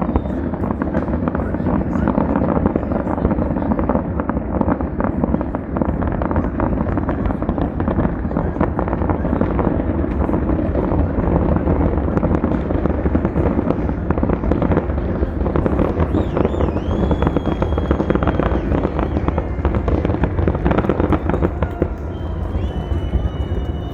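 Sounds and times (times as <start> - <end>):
firework whistles: 0.0 - 2.6, 11.4 - 23.9
fireworks crackling and banging: 0.0 - 23.9
low rumble: 9.6 - 23.9.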